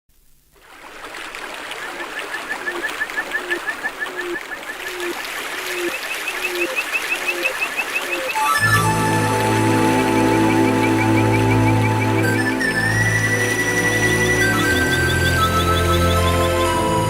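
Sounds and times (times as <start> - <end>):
fast electronic chirps: 2.6 - 8.6.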